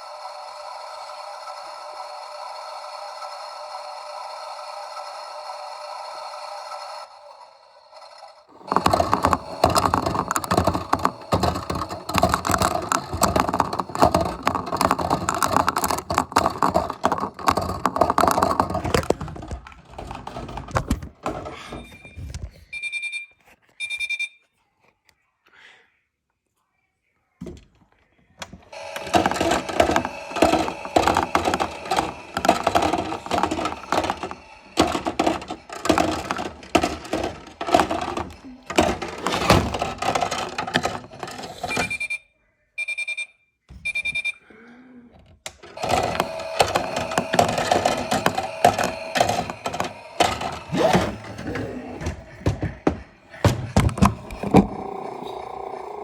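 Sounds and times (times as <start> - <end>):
washing machine clattering: 8.5 - 22.2, 28.4 - 42.0
short electronic beeps: 21.8 - 24.4, 41.8 - 44.4.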